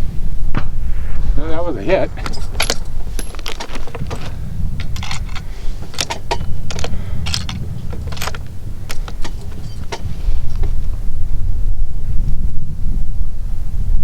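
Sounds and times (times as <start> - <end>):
wind buffeting microphone: 0.0 - 14.0
small metallic clicks: 2.2 - 10.8.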